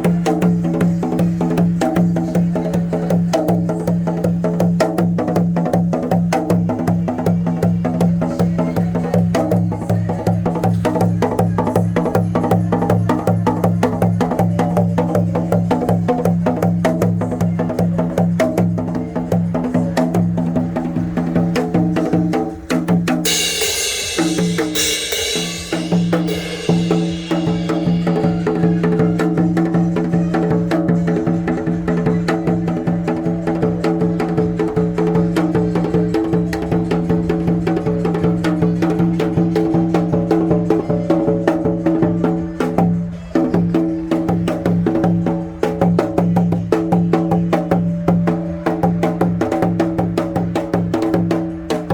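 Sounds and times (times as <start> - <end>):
hourglass drum rapid strokes: 23.2 - 29.8.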